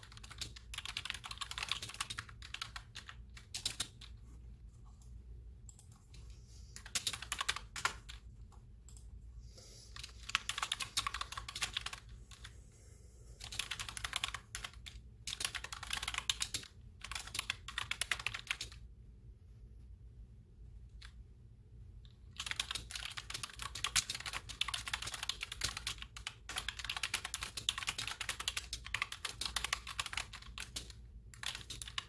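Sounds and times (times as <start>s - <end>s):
clicky keyboard typing: 0.0s - 4.2s, 4.9s - 9.2s, 9.9s - 12.5s, 13.4s - 18.8s, 22.0s - 32.0s.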